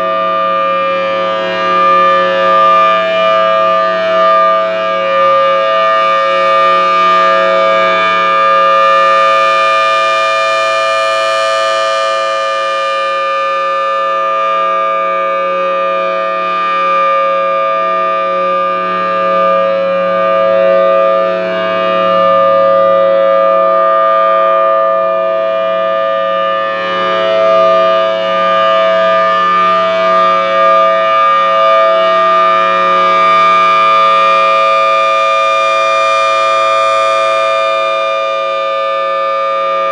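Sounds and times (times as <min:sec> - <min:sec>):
warning siren two-pitch chord: 0:00.0 - 0:39.9.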